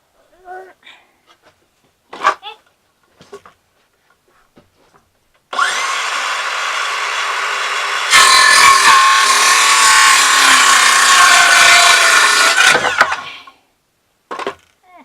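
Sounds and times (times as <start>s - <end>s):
power saw motor whine: 5.5s - 13.3s
saw cutting into wood: 5.5s - 13.4s.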